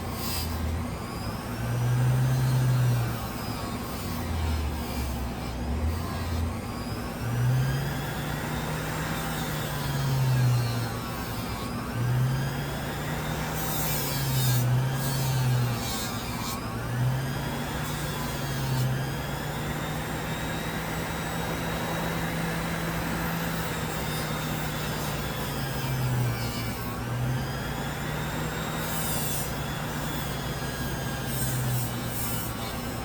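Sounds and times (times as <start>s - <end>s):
bench grinder motor hum: 0.0s - 33.0s
metal grinding hiss: 27.7s - 33.0s.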